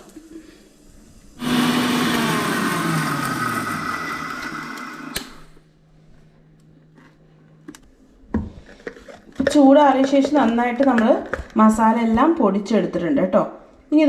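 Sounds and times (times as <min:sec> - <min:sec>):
mixer grinder grinding spices: 0:01.4 - 0:05.2.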